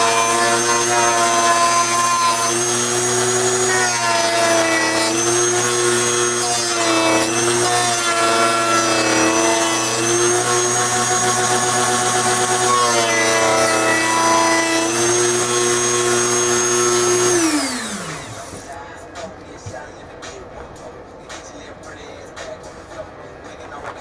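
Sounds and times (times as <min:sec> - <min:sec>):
rotary tool sanding plastic: 0:00.0 - 0:18.8.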